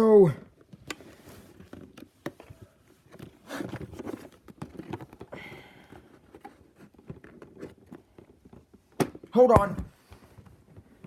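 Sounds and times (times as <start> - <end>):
cardboard scraping: 0.7 - 8.9.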